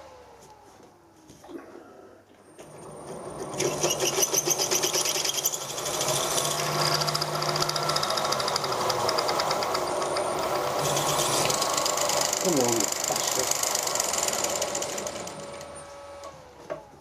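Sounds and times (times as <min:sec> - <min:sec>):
drill bit chattering: 0:03.6 - 0:15.9.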